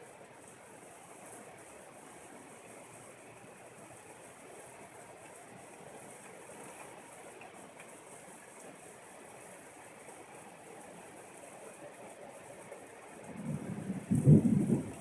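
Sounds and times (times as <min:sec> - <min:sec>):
rain hissing: 0:11.8 - 0:15.0.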